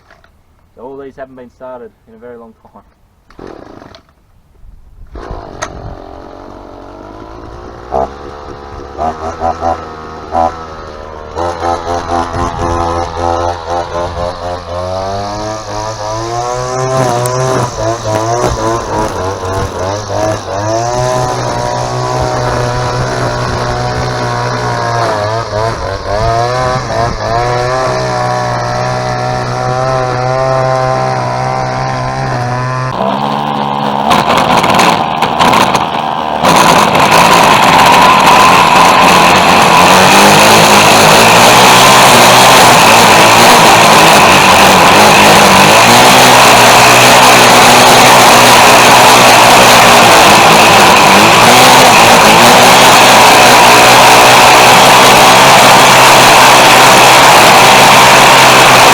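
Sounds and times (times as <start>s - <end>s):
string trimmer engine revving: 3.3s - 4.1s, 5.1s - 58.9s.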